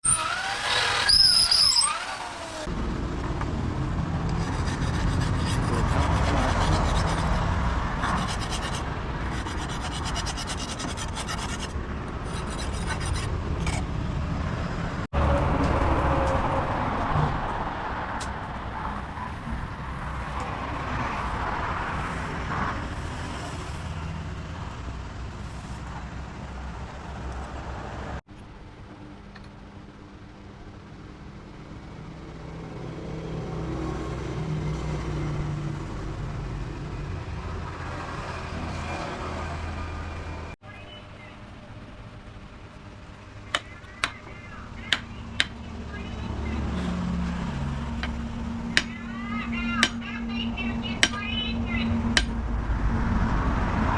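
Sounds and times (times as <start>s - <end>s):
sickle blade being filed: 4.3s - 13.9s.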